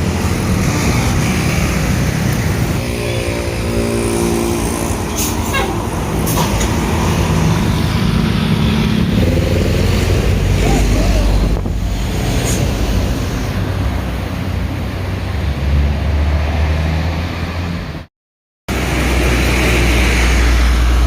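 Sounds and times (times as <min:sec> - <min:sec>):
wind noise on microphone: 0:06.3 - 0:13.8.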